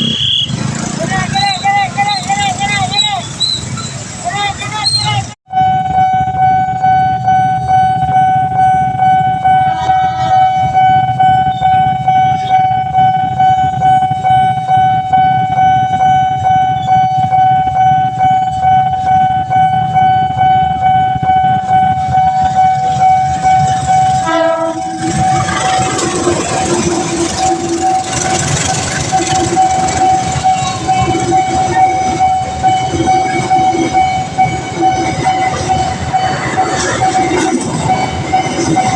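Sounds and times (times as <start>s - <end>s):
crossing alarm high tone: 0.0s - 38.9s
train wheels rumbling: 0.0s - 38.9s
short horn-like sound: 24.2s - 25.2s.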